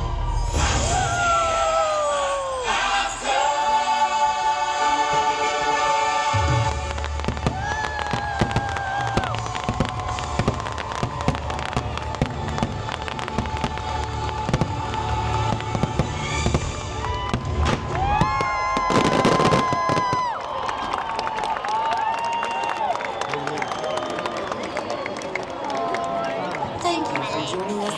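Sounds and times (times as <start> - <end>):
orchestral music: 0.0 - 19.2
fireworks bangs and crackles: 5.0 - 21.8.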